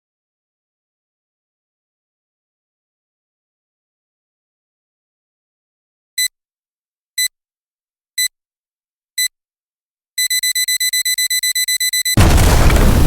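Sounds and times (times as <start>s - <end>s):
electronic countdown beeps: 10.2s - 12.2s
explosion sound effect rumbling: 12.2s - 13.0s.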